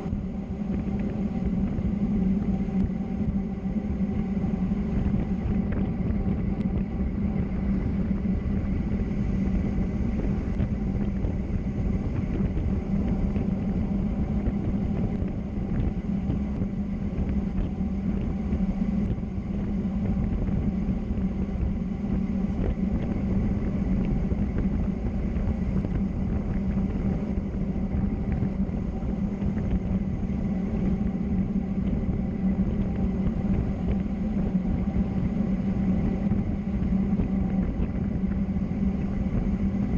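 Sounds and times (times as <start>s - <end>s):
faint steady whines: 0.0s - 39.9s.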